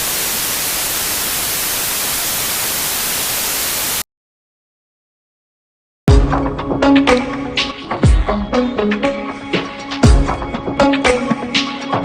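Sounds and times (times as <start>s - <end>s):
static hiss: 0.0s - 4.0s.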